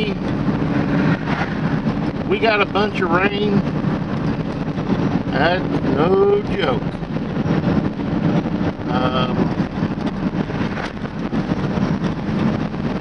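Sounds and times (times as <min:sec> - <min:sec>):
vehicle rumble inside cab: 0:00.0 - 0:13.0.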